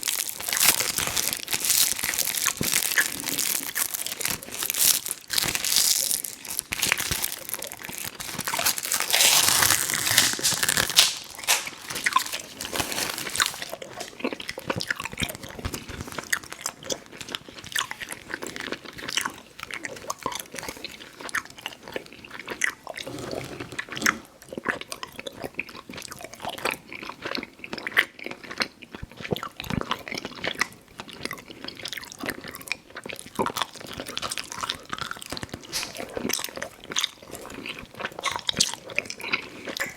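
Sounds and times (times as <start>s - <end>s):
biting and chewing candy: 0.0s - 39.9s.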